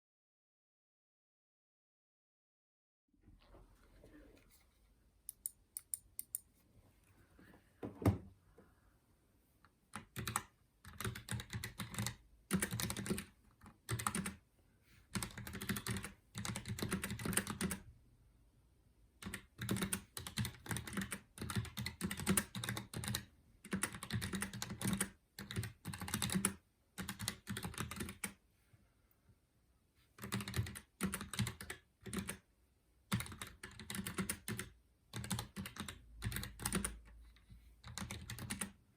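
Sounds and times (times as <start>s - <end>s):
mechanical keyboard typing: 9.9s - 14.4s, 15.1s - 17.8s, 19.2s - 28.4s, 30.2s - 32.4s, 33.1s - 38.8s.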